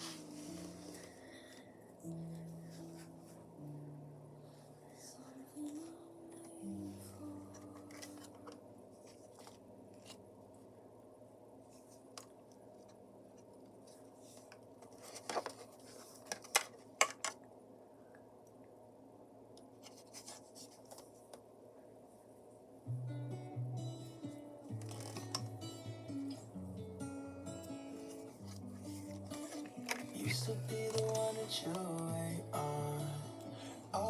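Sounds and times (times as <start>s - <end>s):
faint steady hum: 0.0s - 34.0s
scratchy handling noises: 19.8s - 21.3s, 27.9s - 32.1s.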